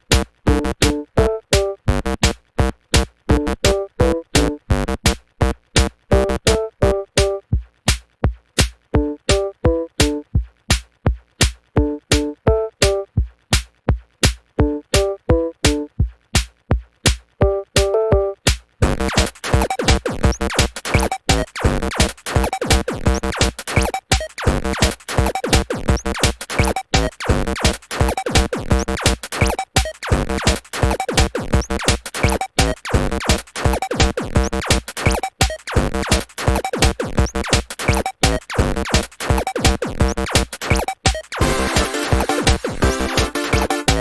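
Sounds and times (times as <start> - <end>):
electronic music with drum machine: 0.0 - 8.0, 8.6 - 44.0.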